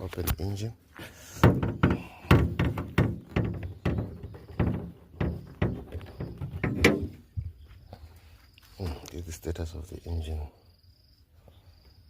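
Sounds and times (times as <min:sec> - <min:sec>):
car bonnet knocks and clunks: 0:01.4 - 0:07.4.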